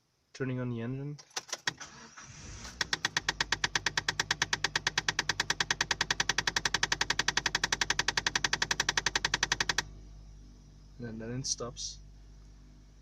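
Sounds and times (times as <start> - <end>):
rapid clicking under dashboard: 1.2 - 1.8, 2.6 - 9.9
car engine idling: 1.3 - 13.0.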